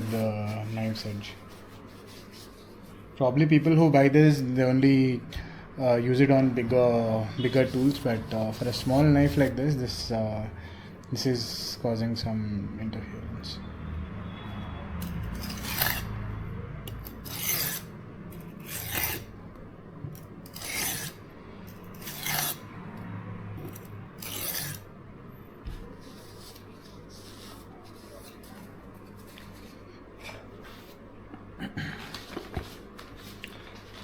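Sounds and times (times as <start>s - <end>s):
knife scraping on whetstone: 15.0s - 16.2s, 16.9s - 19.3s, 20.2s - 22.6s, 23.6s - 24.9s.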